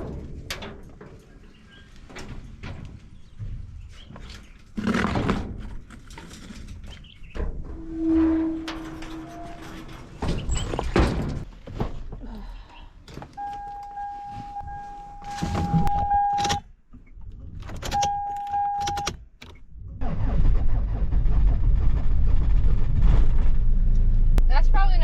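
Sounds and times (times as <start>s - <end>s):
dashboard warning tone: 13.4s - 16.7s, 17.8s - 19.2s
keys and door handling: 17.5s - 19.6s.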